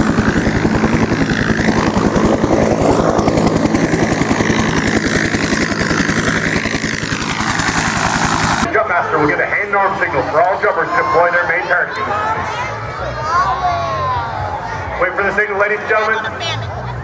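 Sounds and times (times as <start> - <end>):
propeller aircraft engine: 0.0 - 10.9.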